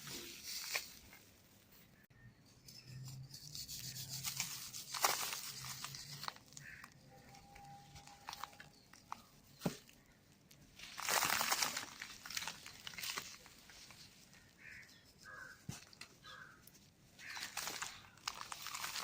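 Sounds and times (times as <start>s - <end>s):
dry cement crumbling and crunching: 10.8s - 14.1s, 17.2s - 19.0s.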